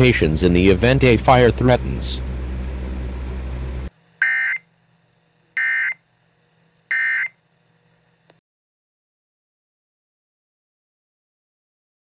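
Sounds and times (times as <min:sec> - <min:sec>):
low hum: 0:00.0 - 0:04.2.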